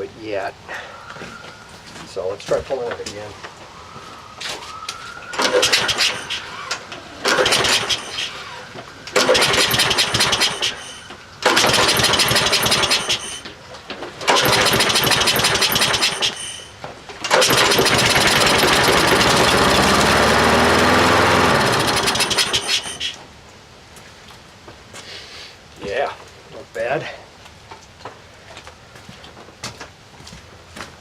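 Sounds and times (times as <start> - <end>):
recoil starter pulls: 5.4 - 8.4, 9.1 - 10.8, 11.4 - 13.4, 14.2 - 16.6, 17.2 - 23.1
lawnmower engine running: 7.2 - 8.0, 11.4 - 13.2, 14.2 - 16.4, 17.2 - 23.1.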